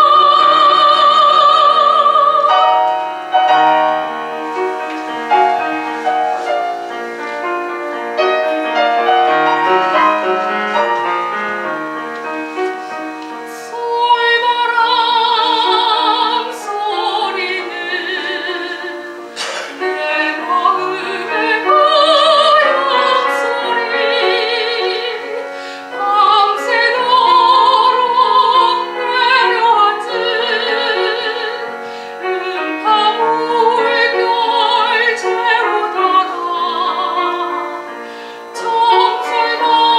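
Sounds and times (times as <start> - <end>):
piano accompaniment: 0.0 - 39.9
soprano singing with vibrato: 0.0 - 39.9.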